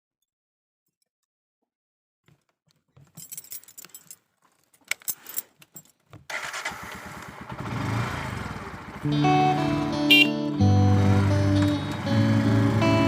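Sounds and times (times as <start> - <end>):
keys jangling: 3.0 - 6.1
vehicle engine starting and running: 6.3 - 13.0.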